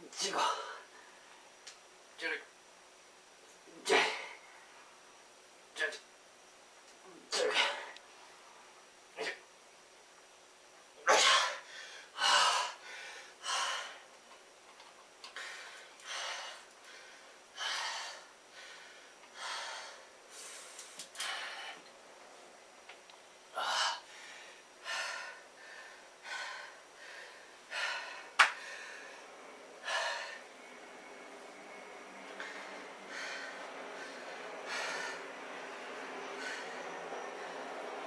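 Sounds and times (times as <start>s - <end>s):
man breathing hard: 11.4s - 14.1s, 15.3s - 21.9s, 23.5s - 30.5s, 32.4s - 38.0s.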